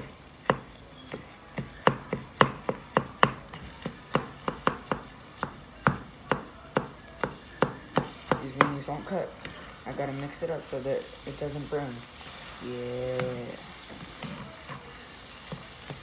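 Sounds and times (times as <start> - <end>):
utensil knocking against frying pan: 0.0 - 9.1.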